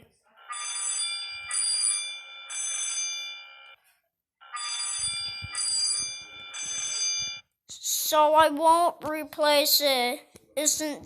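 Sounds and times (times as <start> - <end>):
fire alarm bell ringing: 0.4 - 3.8, 4.4 - 7.5.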